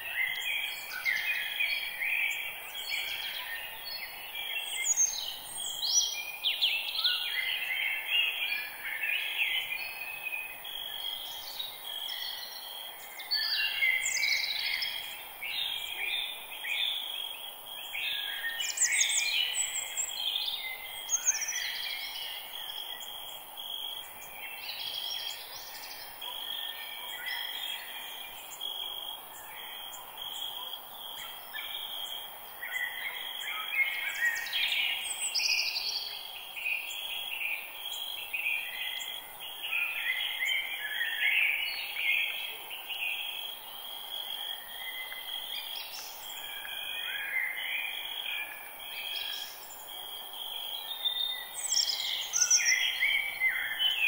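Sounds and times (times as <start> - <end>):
birds chirping and warbling: 50.7 - 54.0.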